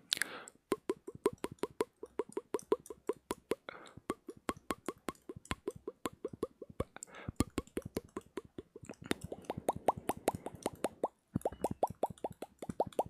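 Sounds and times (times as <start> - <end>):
tongue clicks and pops: 0.0 - 13.0
soft breath: 0.1 - 0.6, 3.7 - 4.0, 7.0 - 7.4, 9.0 - 11.0.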